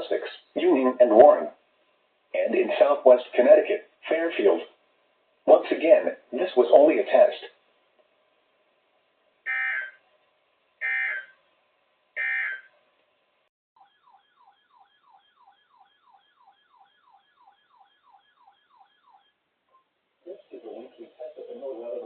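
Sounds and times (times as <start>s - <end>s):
digital data tone bursts: 9.5s - 10.0s, 10.8s - 11.3s, 12.2s - 12.7s.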